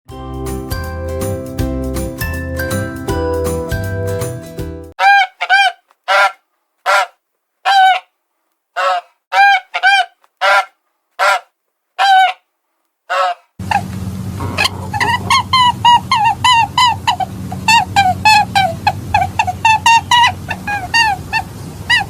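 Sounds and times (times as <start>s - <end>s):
large bird honking: 8.8s - 12.4s, 13.1s - 22.0s
low rumble: 13.6s - 18.9s.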